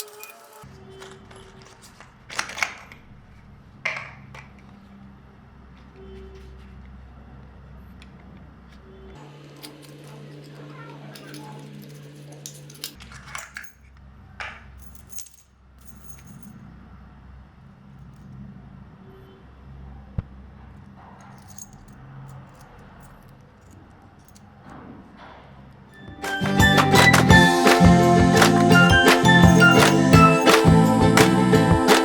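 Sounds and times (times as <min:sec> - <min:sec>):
padlock and keys clinking: 0:00.0 - 0:03.2, 0:09.4 - 0:14.0, 0:14.8 - 0:16.6, 0:21.2 - 0:24.6
loud music: 0:26.0 - 0:32.0.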